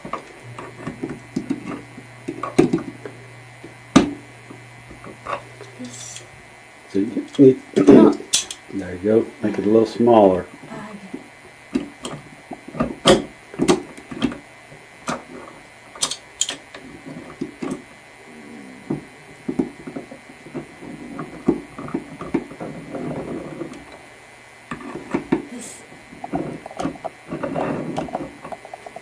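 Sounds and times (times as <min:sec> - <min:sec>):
pliers clicking on metal: 0:08.3 - 0:08.6, 0:16.0 - 0:16.6.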